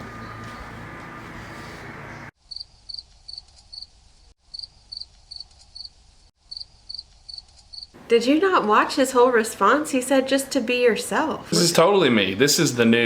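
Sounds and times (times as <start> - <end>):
crickets chirping: 2.4 - 8.0.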